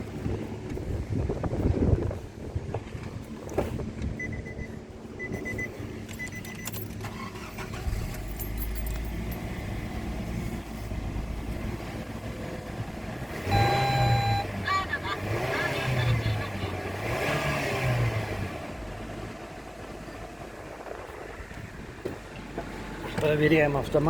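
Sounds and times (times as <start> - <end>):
car engine humming: 0.0 - 24.0
short high beeps: 4.2 - 6.7, 13.5 - 14.6.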